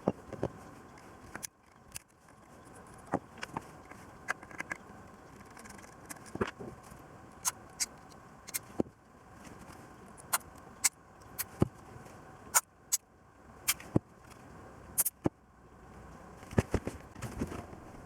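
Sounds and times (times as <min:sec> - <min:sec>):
faint steady hiss: 0:00.0 - 0:18.0.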